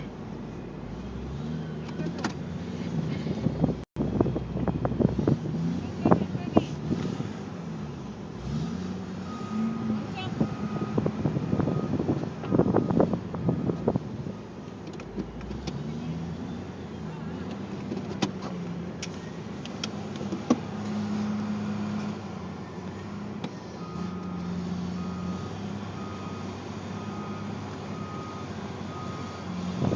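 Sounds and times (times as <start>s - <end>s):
vehicle engine humming: 0.0s - 29.9s
reversing alarm beeps: 9.2s - 13.8s, 25.0s - 29.6s.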